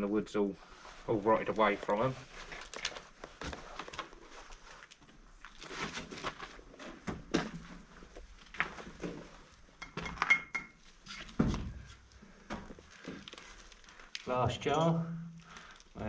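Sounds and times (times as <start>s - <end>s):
glass and metal clinking: 9.8s - 10.8s.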